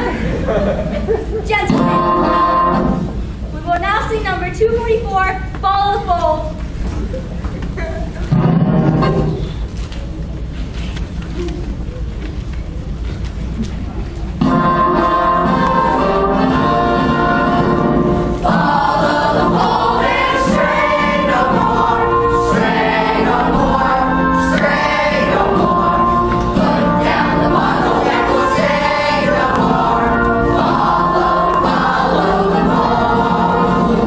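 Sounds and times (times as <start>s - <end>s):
instrumental accompaniment: 1.6s - 3.6s, 14.4s - 34.0s
chorus of young voices singing: 1.7s - 3.1s, 14.4s - 34.0s.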